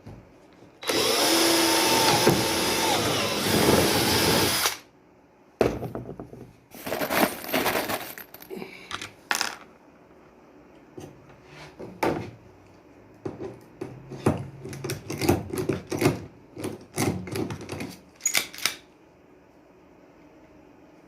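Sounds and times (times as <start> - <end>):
hard parts clicking and knocking: 13.3 - 18.8.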